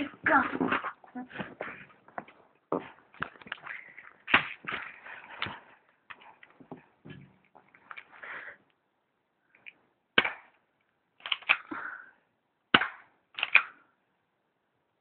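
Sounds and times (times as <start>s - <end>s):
airsoft pistol cracks: 10.2s - 10.6s, 11.2s - 11.7s, 12.8s - 13.8s.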